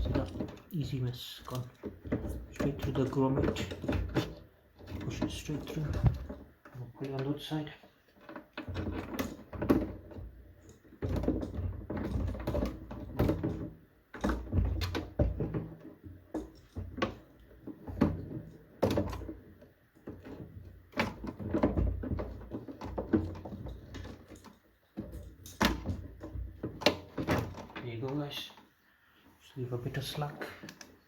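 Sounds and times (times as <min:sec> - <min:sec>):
knocks and clicks of handled fan: 0:01.5 - 0:06.5.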